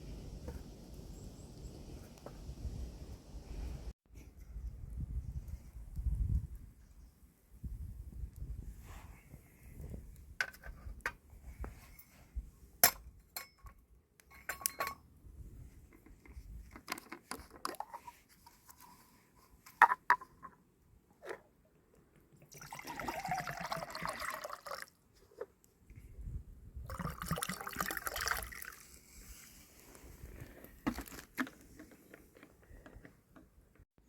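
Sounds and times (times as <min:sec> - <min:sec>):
water pouring into pot: 0:22.5 - 0:24.9, 0:26.9 - 0:28.9.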